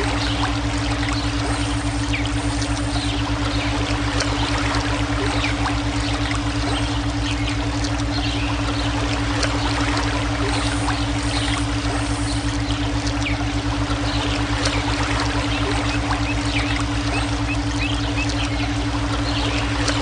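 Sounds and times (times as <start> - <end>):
pulsing low hum: 0.0 - 20.0
stream water trickling: 0.0 - 20.0.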